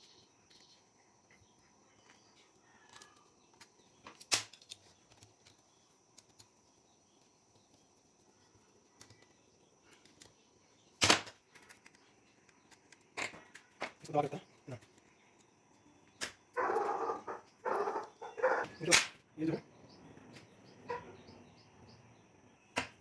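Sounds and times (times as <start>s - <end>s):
faint scattered clicks: 8.8s - 10.6s.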